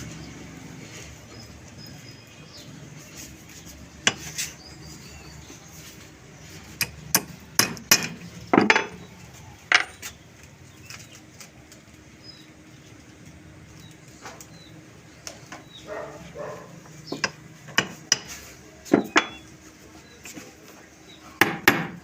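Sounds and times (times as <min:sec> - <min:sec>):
metal lock parts tapping and clicking: 0:06.8 - 0:09.0.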